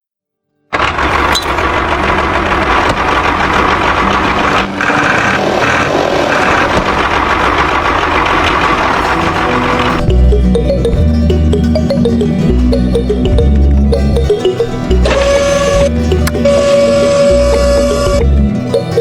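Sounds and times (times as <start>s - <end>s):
drilling machine droning: 0.8s - 10.0s, 15.0s - 18.4s.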